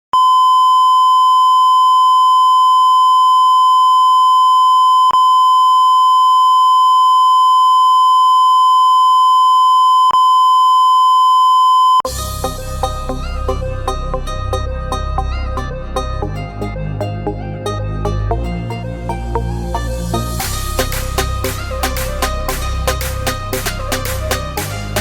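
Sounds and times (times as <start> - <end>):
loud steady electronic beep tone: 0.2 - 12.1
plucked-string background music: 12.1 - 25.0.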